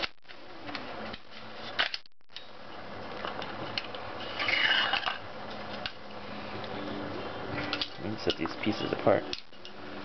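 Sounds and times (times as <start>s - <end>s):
metallic scraping slide: 4.2s - 5.2s.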